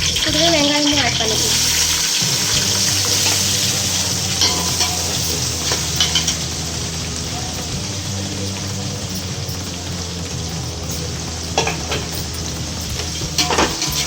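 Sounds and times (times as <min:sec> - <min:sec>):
onions sizzling in oil: 0:00.0 - 0:14.0
stirring in pan: 0:00.0 - 0:14.0.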